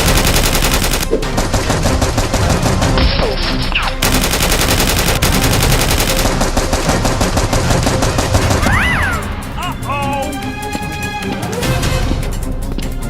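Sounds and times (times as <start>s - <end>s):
automatic gunfire bursts: 0.0s - 8.7s.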